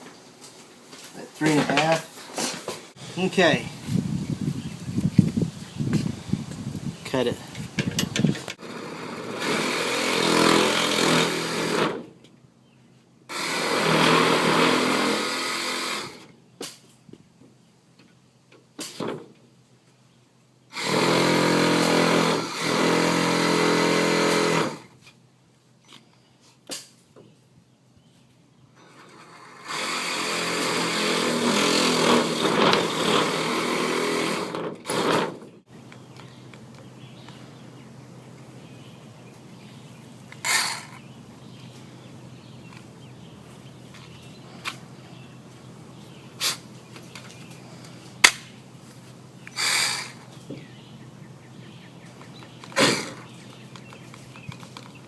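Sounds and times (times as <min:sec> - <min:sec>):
saw cutting drywall: 0:08.6 - 0:12.0, 0:13.3 - 0:16.2, 0:20.8 - 0:24.9, 0:29.0 - 0:35.5.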